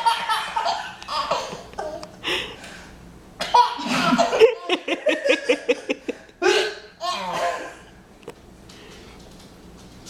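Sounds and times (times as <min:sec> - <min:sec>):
baby laughing: 0:00.0 - 0:02.1, 0:03.4 - 0:05.0.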